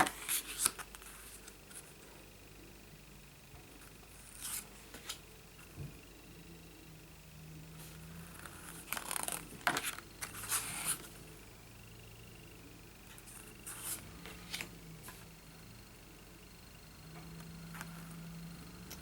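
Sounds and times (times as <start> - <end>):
paper cards rustling and clicking: 0.0 - 1.9, 4.3 - 5.2, 7.8 - 11.1, 13.3 - 15.2.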